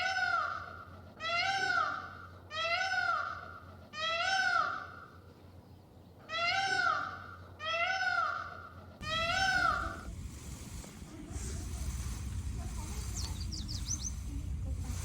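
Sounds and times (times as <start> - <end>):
peafowl calling: 6.3 - 10.1.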